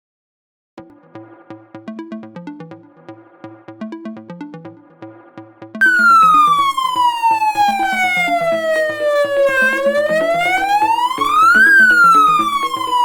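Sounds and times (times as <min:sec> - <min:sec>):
fast electronic siren notes: 0:05.8 - 0:13.0
wailing siren tone sliding down: 0:05.8 - 0:13.0.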